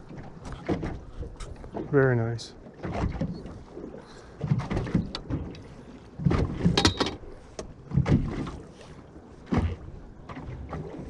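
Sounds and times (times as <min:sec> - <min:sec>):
fishing gear knocking and clattering: 0:06.3 - 0:07.7.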